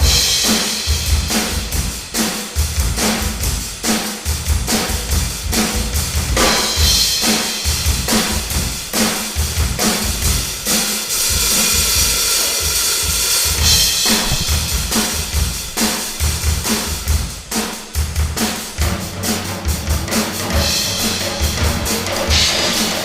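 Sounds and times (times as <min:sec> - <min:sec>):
bass drum and snare beat: 0:00.0 - 0:23.0
cymbal wash: 0:06.4 - 0:19.5.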